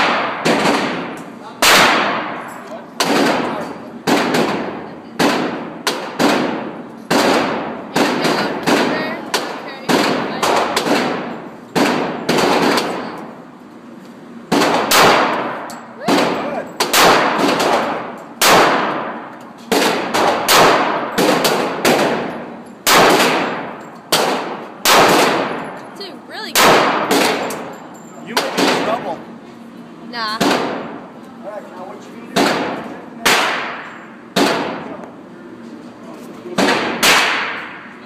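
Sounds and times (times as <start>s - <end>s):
gunshots with echo: 0.0s - 2.4s, 14.5s - 25.6s, 36.6s - 37.9s.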